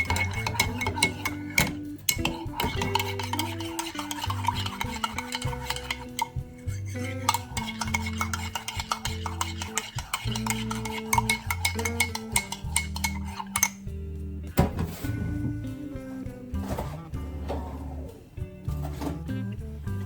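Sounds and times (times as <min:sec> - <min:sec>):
background music with bass line: 0:00.0 - 0:08.5, 0:10.2 - 0:20.0
spoon clinking against a dish: 0:00.0 - 0:13.9.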